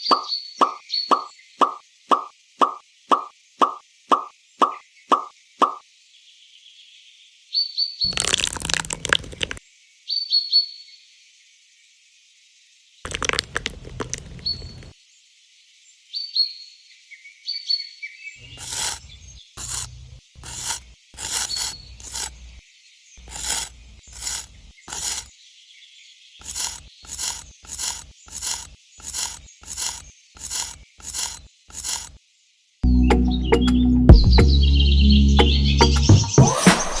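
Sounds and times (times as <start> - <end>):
scraping strokes: 18.4 - 22.6, 23.2 - 25.3, 26.4 - 32.2.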